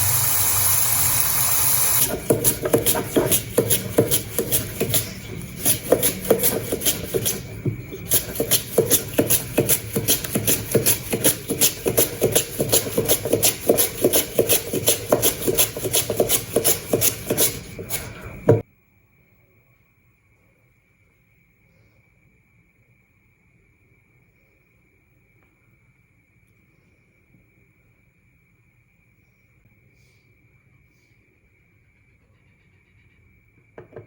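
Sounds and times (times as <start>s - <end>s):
potato rasped against blade: 0.7s - 18.6s.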